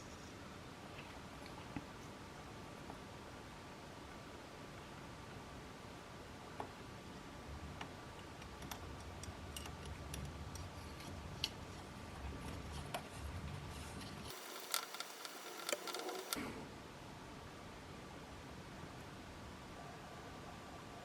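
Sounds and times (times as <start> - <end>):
small objects clicking and tapping: 14.3 - 16.4.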